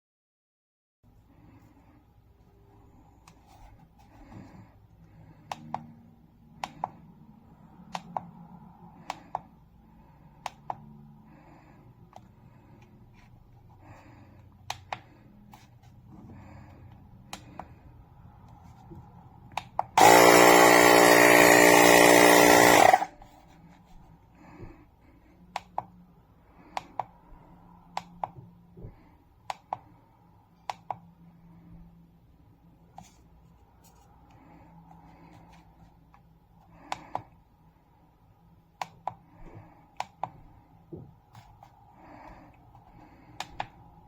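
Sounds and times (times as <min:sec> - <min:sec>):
tyre inflator compressor running: 0:20.0 - 0:23.3.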